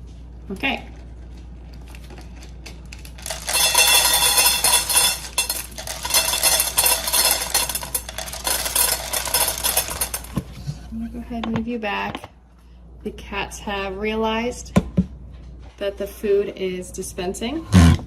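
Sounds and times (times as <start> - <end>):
dry kibble rattling into bowls: 1.8 - 10.6.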